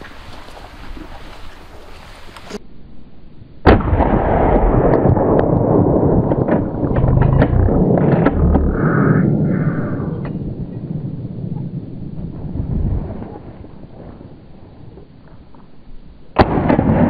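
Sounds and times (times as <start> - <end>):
gunshot: 3.7 - 5.5, 16.4 - 17.0.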